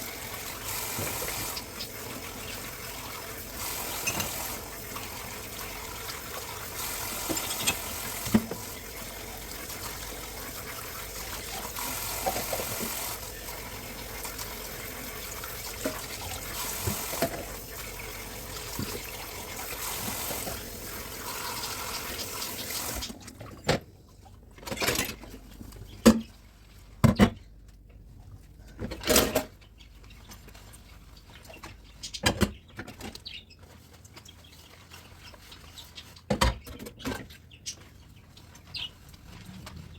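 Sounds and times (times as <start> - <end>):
tap running into sink: 0.5 - 23.2
dishes clinking and clattering: 3.6 - 5.0, 6.8 - 9.0.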